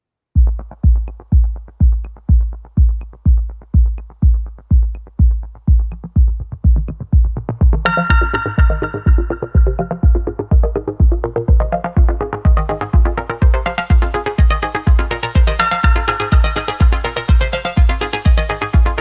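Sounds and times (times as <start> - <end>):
electronic dance music: 0.4 - 19.0
heavy kick drum: 0.4 - 19.0
bright synthesizer: 7.8 - 19.0.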